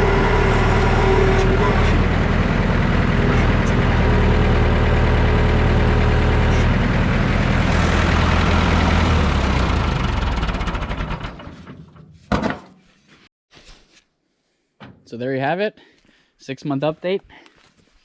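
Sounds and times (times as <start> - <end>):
tractor engine running: 0.0 - 12.2.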